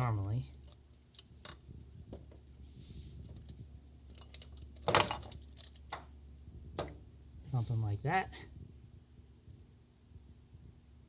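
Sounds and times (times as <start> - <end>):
metal engine parts clinking: 0.0 - 2.4, 3.3 - 6.1.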